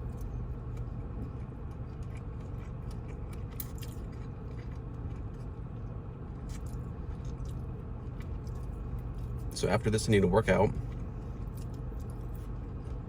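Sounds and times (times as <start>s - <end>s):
person chewing food: 0.0s - 9.5s, 10.7s - 13.0s
steady low hum: 0.0s - 13.0s.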